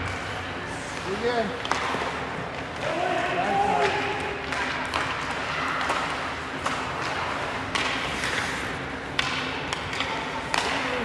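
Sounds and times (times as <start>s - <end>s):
hubbub of a rink: 0.0s - 11.0s
hockey sticks and puck knocking: 3.8s - 11.0s.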